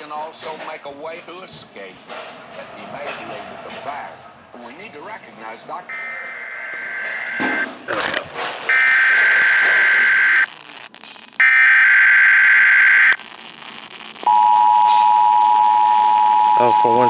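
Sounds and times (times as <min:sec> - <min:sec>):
buzzing digital data bursts: 0:08.7 - 0:17.0
two-tone attention signal: 0:14.3 - 0:17.0.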